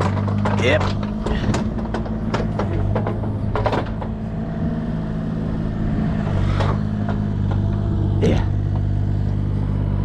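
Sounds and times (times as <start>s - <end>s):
sharp knocks: 0.0s - 4.3s
engine humming steadily: 0.0s - 10.0s.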